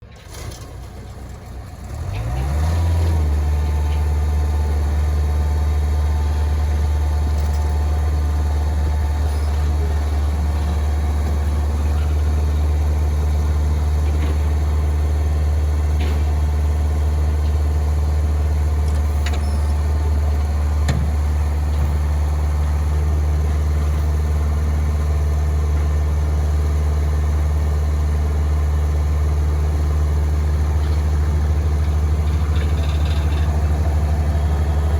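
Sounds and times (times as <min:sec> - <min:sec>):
diesel engine starting and running: 0:00.0 - 0:34.9.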